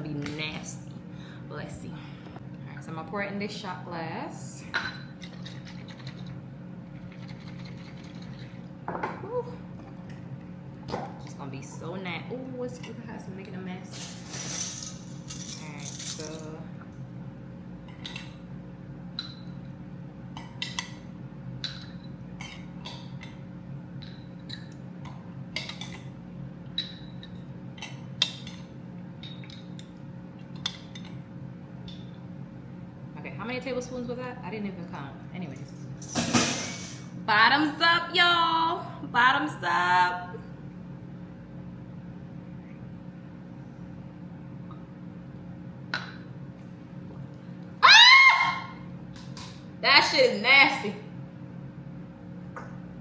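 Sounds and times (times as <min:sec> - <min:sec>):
steady low hum: 0:00.0 - 0:53.0.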